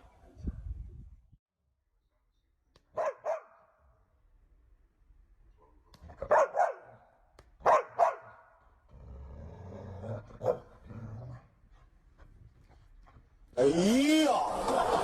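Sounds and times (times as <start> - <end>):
dog barking: 3.0 - 3.6, 6.2 - 7.0, 7.6 - 8.4, 10.4 - 10.7
dog growling low and rough: 8.9 - 11.6.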